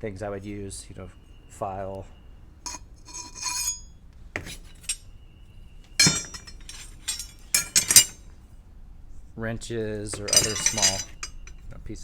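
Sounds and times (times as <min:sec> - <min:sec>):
metal hand tools clinking: 0:02.7 - 0:05.0, 0:06.0 - 0:08.2, 0:10.1 - 0:11.6.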